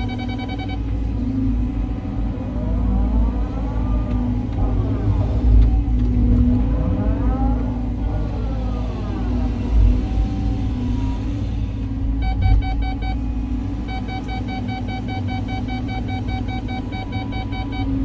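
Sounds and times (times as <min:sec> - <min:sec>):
rapid electronic beeping: 0:00.0 - 0:01.1, 0:12.2 - 0:18.0
excavator diesel engine rumbling: 0:00.0 - 0:18.0
hydraulic whine: 0:00.0 - 0:18.0.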